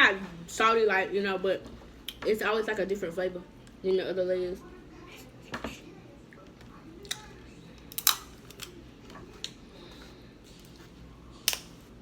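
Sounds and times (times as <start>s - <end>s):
crab shell cracking: 7.8s - 8.8s.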